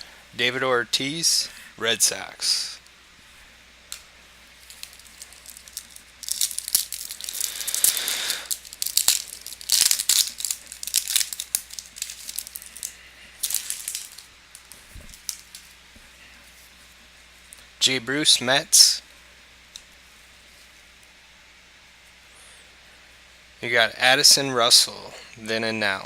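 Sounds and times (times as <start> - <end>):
foil wrapper crinkling and tearing: 4.6 - 15.8.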